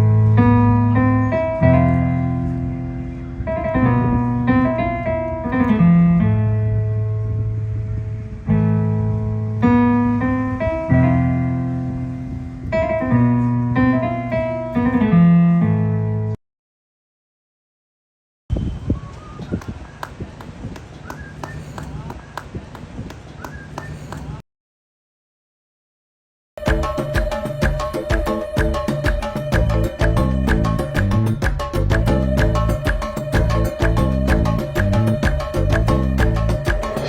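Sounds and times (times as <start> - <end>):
piano chords: 0.0 - 16.4, 26.6 - 37.0.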